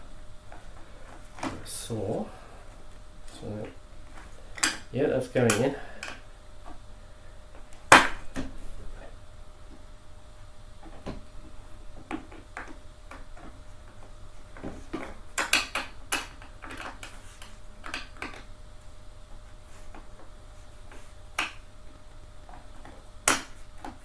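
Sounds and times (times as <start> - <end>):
clicks and knocks of chair parts: 0.5 - 2.0, 2.9 - 6.8, 7.5 - 9.1, 10.8 - 18.6, 19.7 - 24.0.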